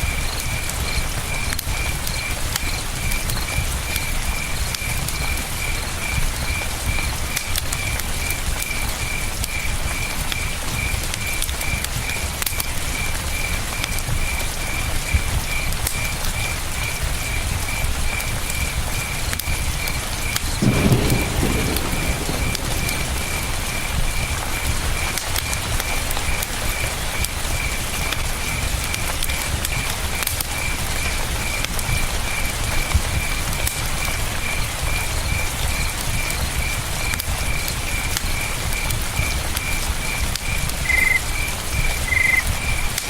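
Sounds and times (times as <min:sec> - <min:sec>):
campfire crackling and popping: 0:00.0 - 0:43.0
cricket chirping: 0:00.0 - 0:43.0
low thud: 0:21.1 - 0:25.1.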